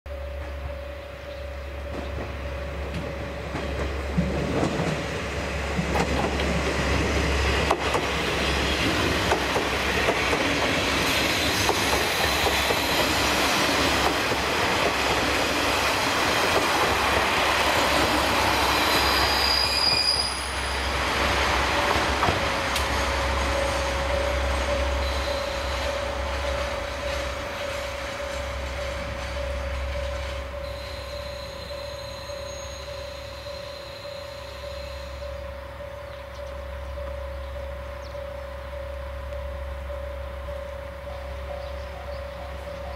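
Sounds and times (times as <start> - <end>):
diesel railcar moving: 0.1 - 42.9
wheel or brake squeal: 18.7 - 21.0, 25.0 - 25.9, 30.0 - 35.4.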